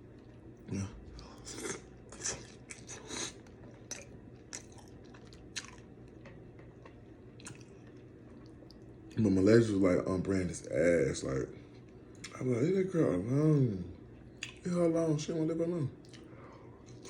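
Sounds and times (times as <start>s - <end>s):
wet smacking and chewing: 1.1s - 9.2s, 14.4s - 14.6s, 16.0s - 17.0s.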